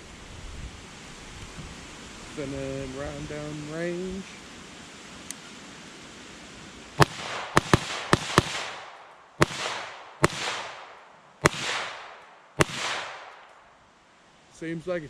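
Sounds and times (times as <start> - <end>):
pistol gunshots with echo: 7.0 - 13.6.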